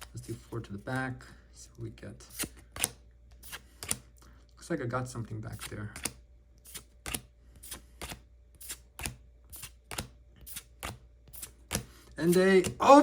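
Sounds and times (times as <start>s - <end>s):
trading cards snapping: 2.4s - 4.0s, 5.6s - 12.8s.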